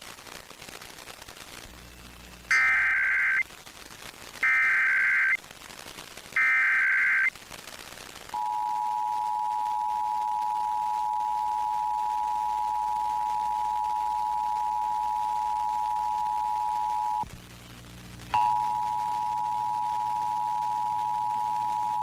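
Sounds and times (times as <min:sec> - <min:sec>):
two-tone alert signal: 0:02.5 - 0:03.4, 0:04.4 - 0:05.4, 0:06.4 - 0:07.3.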